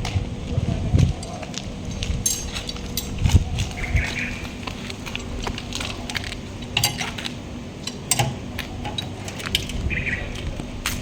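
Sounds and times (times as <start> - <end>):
steady low hum: 0.0 - 11.0
hand tools clinking on metal: 1.9 - 3.2, 5.2 - 9.8.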